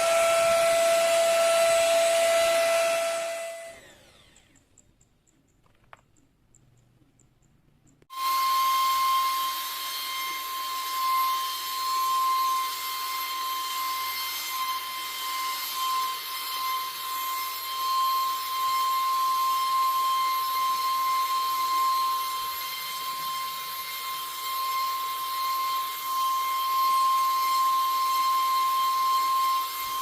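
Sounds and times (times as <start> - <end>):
vacuum cleaner running: 0.0 - 4.5.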